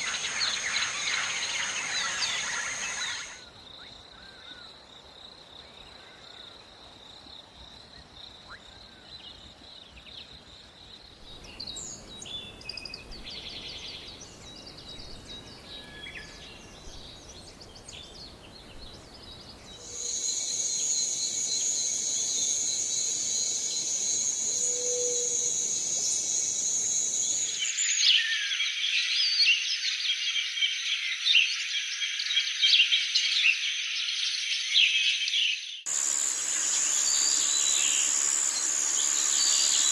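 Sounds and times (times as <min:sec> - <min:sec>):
bird chirps: 0:00.0 - 0:03.4, 0:22.4 - 0:39.9
overlapping bird chatter: 0:00.0 - 0:03.4, 0:35.9 - 0:39.9
high insect drone: 0:00.0 - 0:06.4, 0:09.6 - 0:28.0, 0:35.9 - 0:39.9
dense insect chorus: 0:00.0 - 0:34.8, 0:35.9 - 0:39.9.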